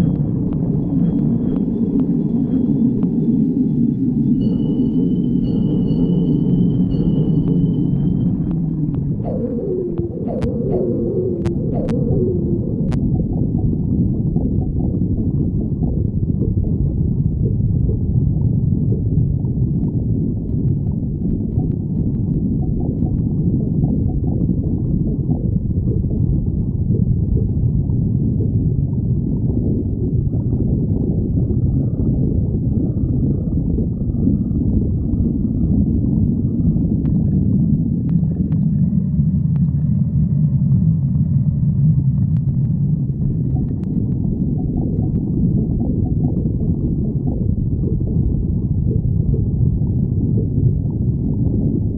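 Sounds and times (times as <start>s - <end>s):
stomach growling: 6.9s - 51.9s.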